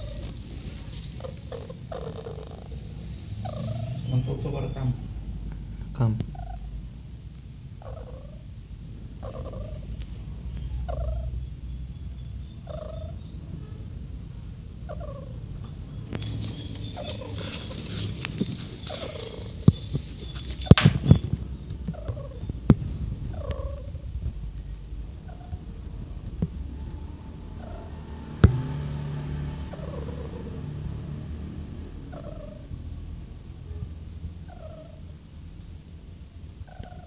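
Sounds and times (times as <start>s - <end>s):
animal snoring: 1.5s - 4.0s.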